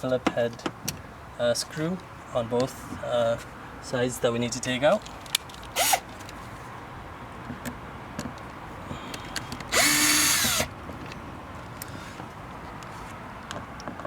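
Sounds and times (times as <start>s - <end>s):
power drill backing out screws: 9.7s - 10.7s.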